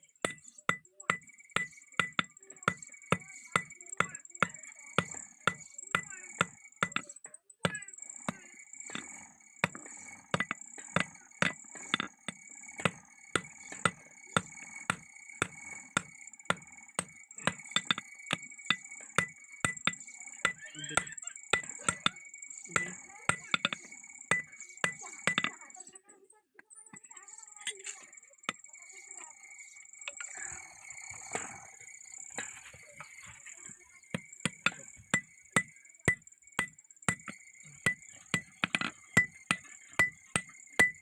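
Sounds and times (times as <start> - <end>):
hammer striking steel on anvil: 0.2 - 22.2, 22.8 - 25.6, 34.1 - 41.0.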